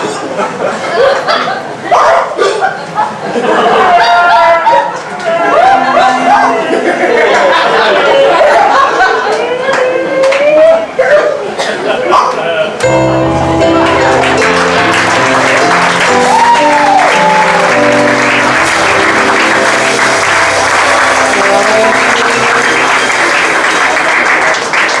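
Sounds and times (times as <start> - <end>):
live band music: 12.8 - 24.2
audience applause: 12.8 - 25.0.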